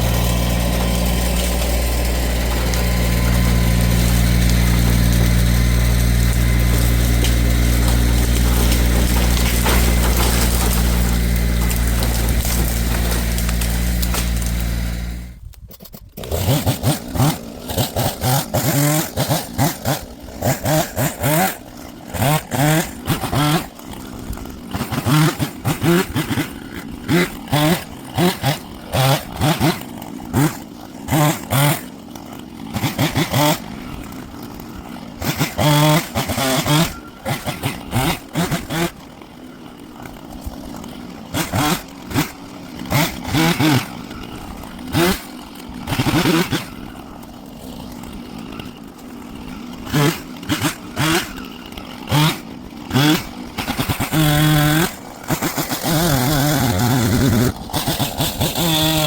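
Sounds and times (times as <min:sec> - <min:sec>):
engine revving: 0:00.0 - 0:15.4, 0:16.2 - 0:24.0, 0:24.6 - 0:32.0, 0:32.6 - 0:34.0, 0:35.2 - 0:39.0, 0:41.3 - 0:47.0, 0:49.4 - 0:59.0.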